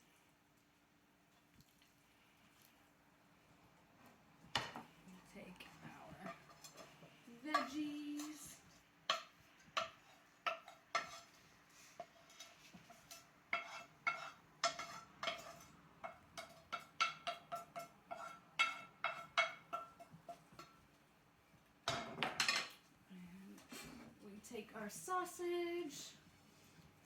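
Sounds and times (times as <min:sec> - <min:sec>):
utensil clinking against pan: 0:06.1 - 0:11.4, 0:12.0 - 0:20.8.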